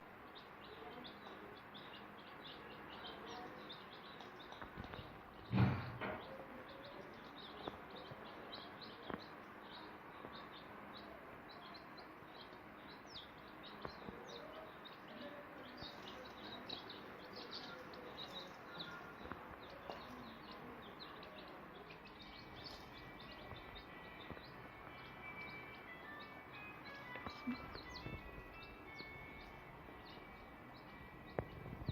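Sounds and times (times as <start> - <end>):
chicks peeping: 0.0 - 31.9
loud thump: 5.4 - 6.3.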